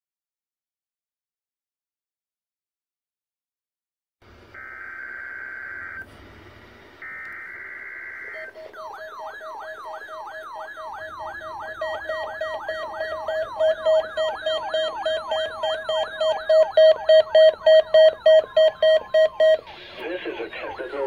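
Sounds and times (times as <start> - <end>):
siren-like sweeping tone: 7.0 - 19.9
rapid pulsed beep: 8.2 - 21.0.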